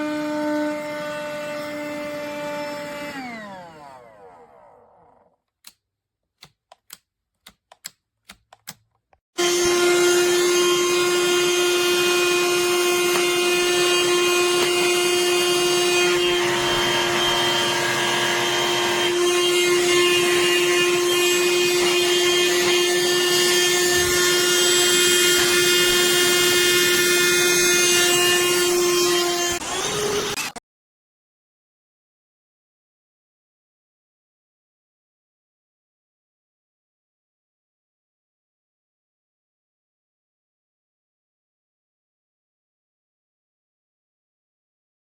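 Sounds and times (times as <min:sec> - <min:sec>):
handheld vacuum whining: 0:00.0 - 0:05.4, 0:09.4 - 0:30.6.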